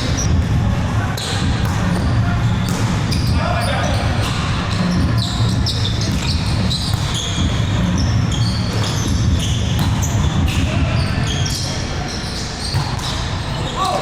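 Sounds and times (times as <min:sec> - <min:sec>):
low gym background noise: 0:00.0 - 0:14.0
volleyball hits: 0:01.2 - 0:03.4, 0:08.7 - 0:10.9
sneaker squeaks on court: 0:01.2 - 0:14.0.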